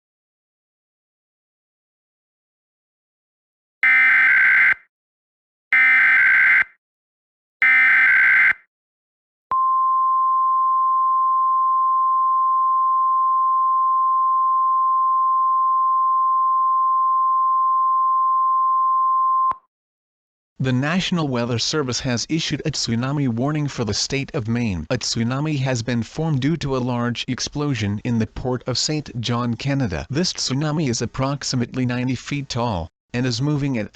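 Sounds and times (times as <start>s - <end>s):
steady single-pitched attention tone: 5.8s - 6.7s, 7.6s - 8.6s.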